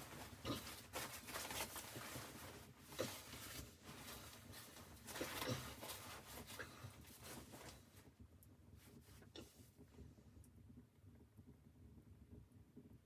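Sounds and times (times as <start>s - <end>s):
faint rustling: 0.0s - 8.1s.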